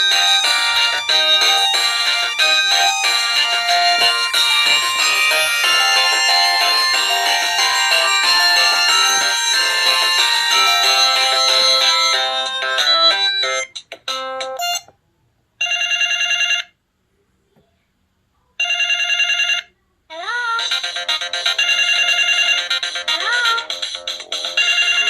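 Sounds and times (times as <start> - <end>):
synthesized phone ringtones: 0.0 - 14.9, 15.6 - 16.7, 20.6 - 25.0.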